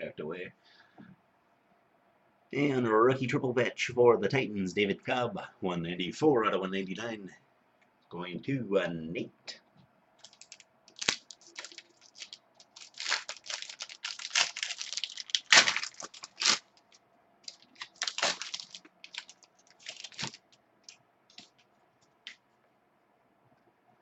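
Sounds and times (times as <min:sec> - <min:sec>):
plastic packaging crinkling: 0:10.2 - 0:22.4.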